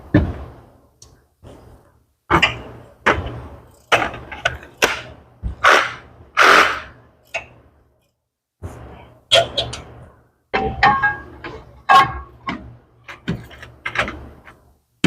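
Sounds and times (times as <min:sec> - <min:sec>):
sharp knocks and thuds: 0:00.0 - 0:00.6.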